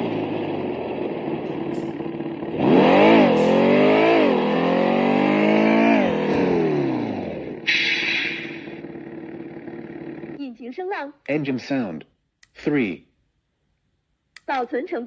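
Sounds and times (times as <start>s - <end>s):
synthesized car engine sound: 0.0s - 10.4s
short hiss: 7.7s - 8.6s.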